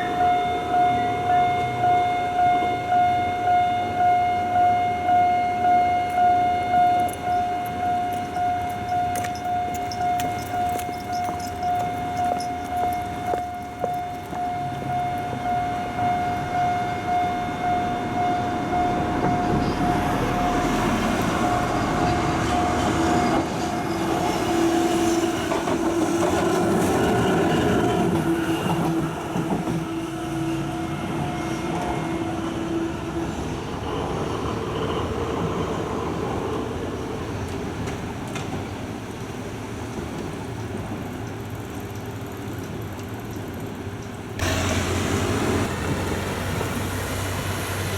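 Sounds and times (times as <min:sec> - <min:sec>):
level crossing bell ringing: 0:00.0 - 0:19.1
road traffic rumble: 0:05.6 - 0:47.9
train wheels clacking: 0:07.0 - 0:15.3, 0:19.2 - 0:30.4.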